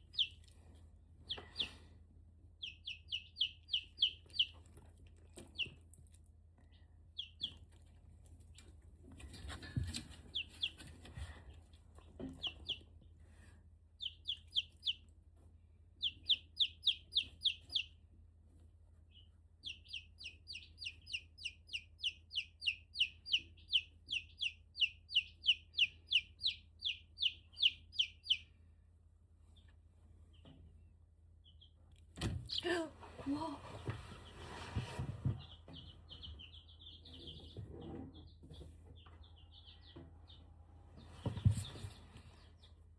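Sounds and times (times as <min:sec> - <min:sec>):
chick peeping: 0:00.0 - 0:00.6, 0:01.2 - 0:01.9, 0:02.5 - 0:06.1, 0:07.1 - 0:13.2, 0:14.0 - 0:15.2, 0:16.0 - 0:18.0, 0:19.0 - 0:28.7, 0:29.5 - 0:42.9.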